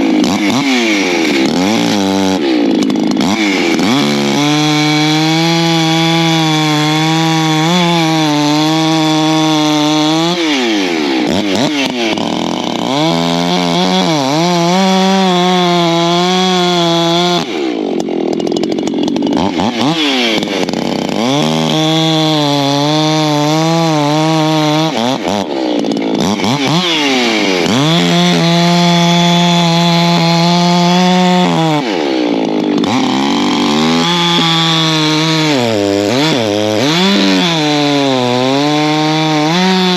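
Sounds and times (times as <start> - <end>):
chainsaw cutting logs: 0.0 - 39.9.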